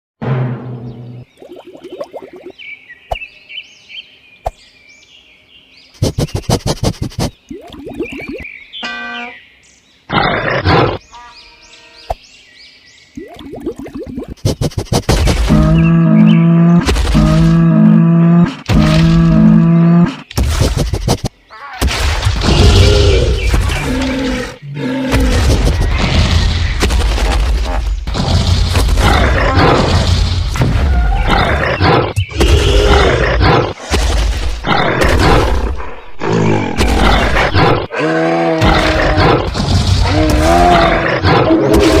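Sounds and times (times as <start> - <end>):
animal roars and cries: 10.1 - 11.0, 15.4 - 20.3, 21.5 - 33.8, 34.6 - 42.0.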